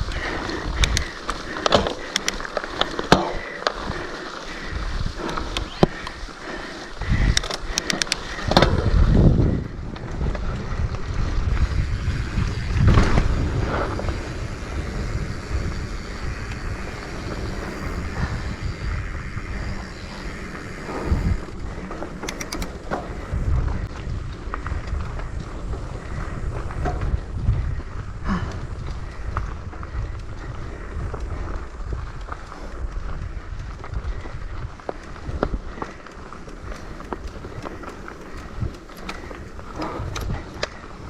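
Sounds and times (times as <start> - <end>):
tyres grinding over dirt: 0.0 - 6.5
sharp rattling clicks: 0.0 - 8.9, 20.0 - 23.7, 32.8 - 41.0
wind rumbling on microphone: 0.0 - 41.0.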